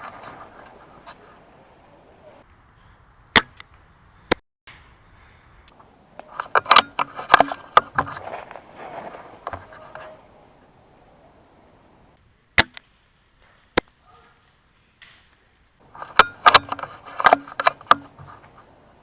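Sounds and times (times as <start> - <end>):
clicks and knocks: 6.2 - 8.6, 15.0 - 18.7.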